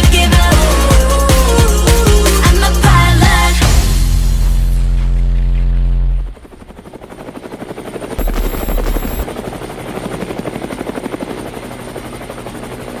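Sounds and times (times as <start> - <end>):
helicopter rotor chopping: 6.4 - 13.0.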